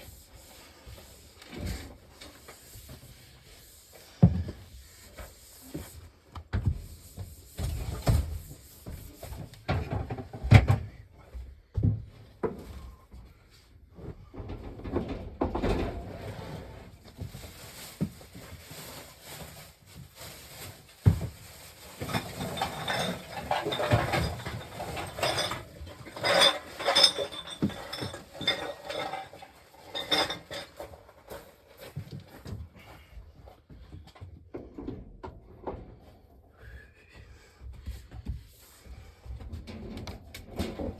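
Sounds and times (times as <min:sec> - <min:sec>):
objects knocking and clinking: 0:22.1 - 0:30.9.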